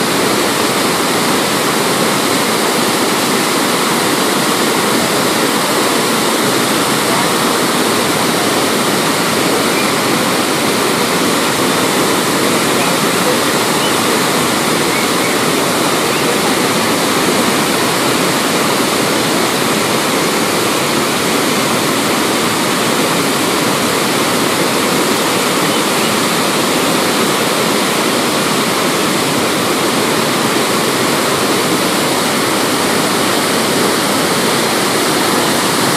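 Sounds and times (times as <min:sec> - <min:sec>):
waterfall rushing: 0:00.0 - 0:35.9.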